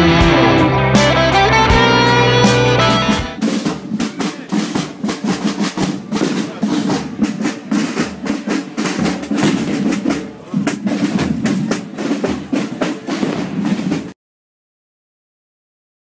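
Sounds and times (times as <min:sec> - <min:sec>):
snare drum rolls: 0:00.0 - 0:14.2.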